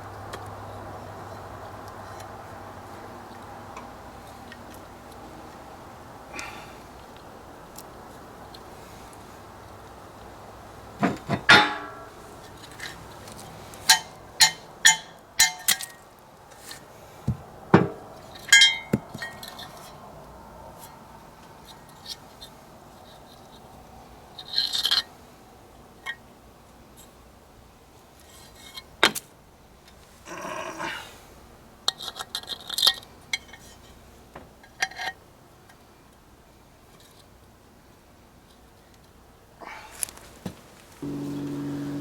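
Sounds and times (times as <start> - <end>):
metal tools knocking on metal: 11.0 - 12.1.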